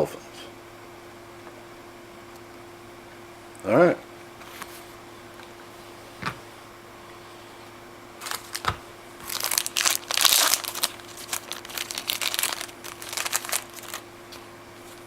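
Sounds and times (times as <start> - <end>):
wrapper crinkling and crackling: 8.2 - 15.0.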